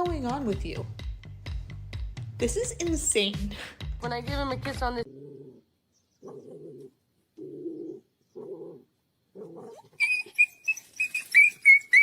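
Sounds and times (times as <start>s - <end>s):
dog grumbling: 5.0s - 10.0s
dog squealing: 9.4s - 12.0s.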